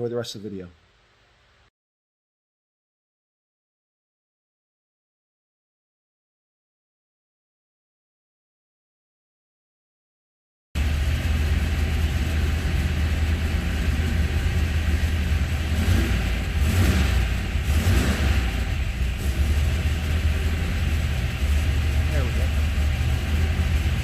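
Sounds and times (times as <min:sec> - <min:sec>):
racing engine running loud: 0:10.8 - 0:24.0.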